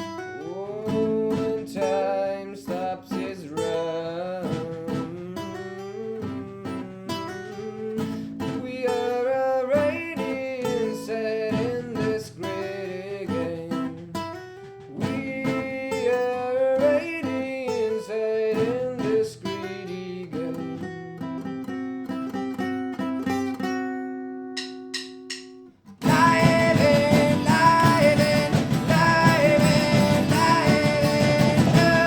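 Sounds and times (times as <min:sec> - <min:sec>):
acoustic guitars: 0:00.0 - 0:32.0.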